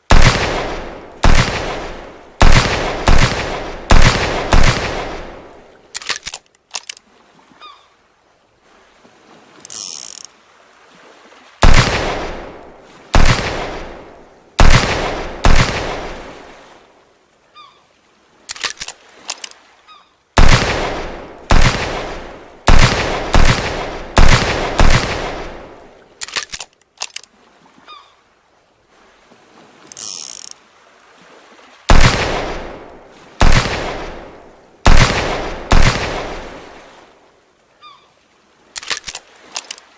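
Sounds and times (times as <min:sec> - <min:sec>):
revolver gunshots echoing: 0:00.1 - 0:05.6, 0:11.6 - 0:12.6, 0:13.2 - 0:14.0, 0:14.6 - 0:16.2, 0:20.4 - 0:25.8, 0:31.9 - 0:36.6.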